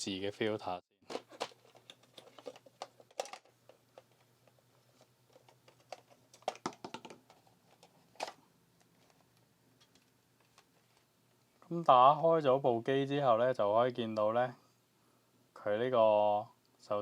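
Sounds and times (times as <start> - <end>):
plastic clicks and taps: 5.3 - 8.4
sharp plastic knocks: 5.9 - 7.4.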